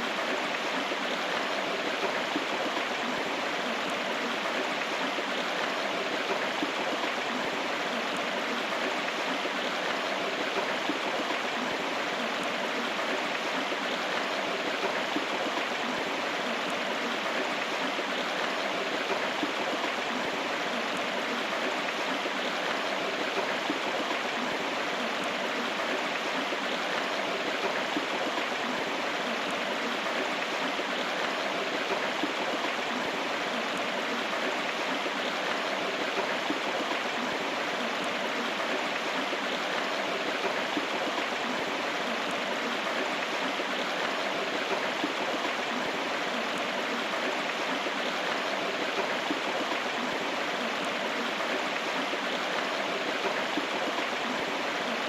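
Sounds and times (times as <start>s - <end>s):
stream water rushing: 0.0s - 55.0s.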